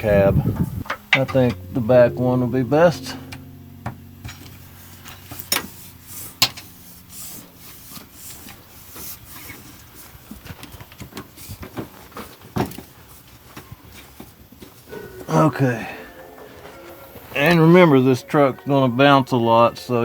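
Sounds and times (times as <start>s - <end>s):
faint low hum: 0.0s - 9.8s.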